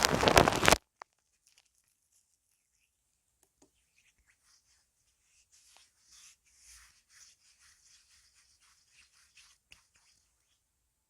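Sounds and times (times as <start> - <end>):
soft rubbing on microphone: 0.0 - 3.0, 3.6 - 10.7.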